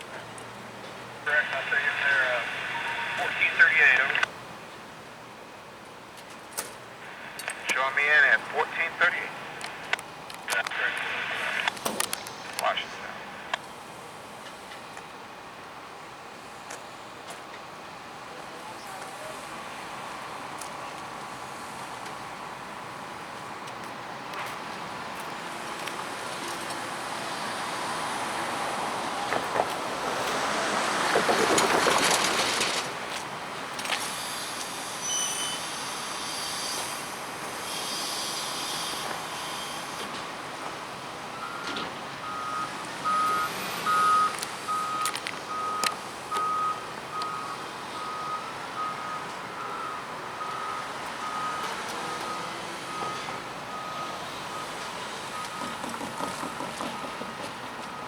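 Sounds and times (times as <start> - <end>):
broad machinery noise: 0.0 - 4.3, 6.6 - 15.1, 16.4 - 47.6, 51.0 - 58.0
back-up alarm beeping: 41.3 - 56.8.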